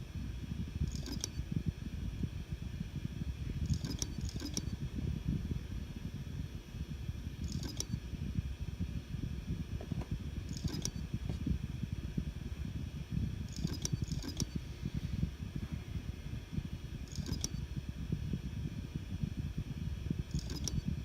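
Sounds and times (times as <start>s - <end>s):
hard drive metallic clicks: 0.9s - 1.4s, 3.6s - 4.8s, 7.4s - 8.0s, 9.8s - 11.5s, 13.5s - 14.6s, 17.1s - 17.7s, 20.3s - 20.9s
low rumble: 1.6s - 13.5s.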